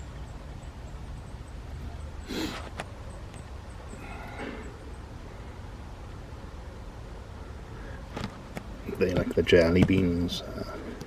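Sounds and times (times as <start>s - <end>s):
faint even hiss: 2.2s - 3.0s.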